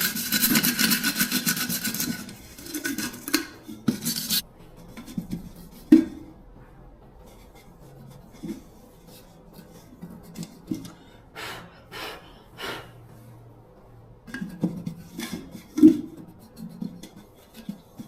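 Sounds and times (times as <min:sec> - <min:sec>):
scraping strokes: 0:00.0 - 0:06.1.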